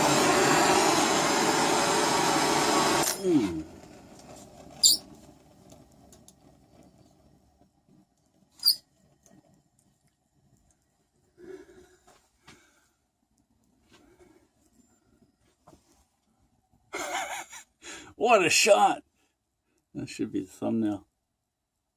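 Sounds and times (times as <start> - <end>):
power tool motor whirring: 0.0 - 3.2.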